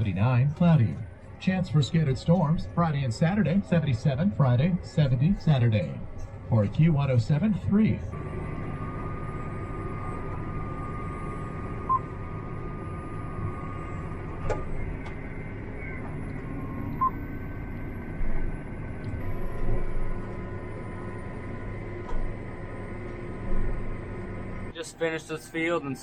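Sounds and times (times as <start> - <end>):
tractor engine running: 0.0 - 24.8
short electronic beeps: 9.3 - 14.8, 15.8 - 17.4.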